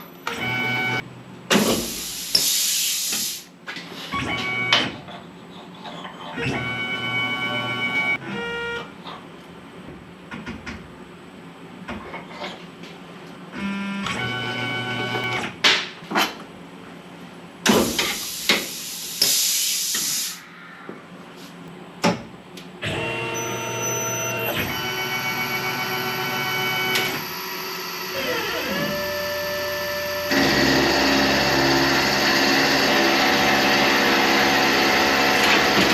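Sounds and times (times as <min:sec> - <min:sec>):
harsh hissing noise: 0:01.6 - 0:03.5, 0:17.7 - 0:21.0
stepper motors whining: 0:22.8 - 0:35.9.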